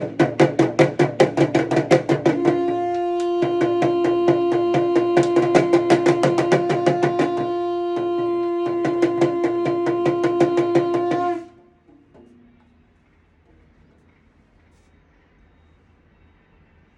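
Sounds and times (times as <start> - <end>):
hand drum rattling: 0.0 - 14.0
conch shell blown: 2.0 - 12.6.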